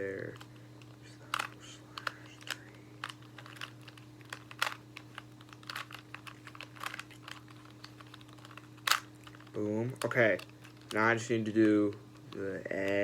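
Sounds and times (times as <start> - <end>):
plastic puzzle clicking: 1.3 - 9.4.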